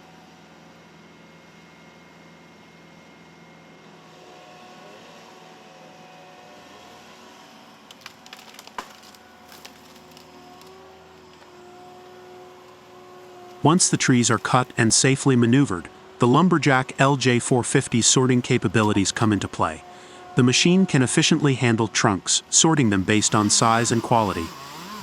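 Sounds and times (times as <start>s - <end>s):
faint machine drone: 0.0s - 25.0s
wood splintering cracks: 7.9s - 11.5s.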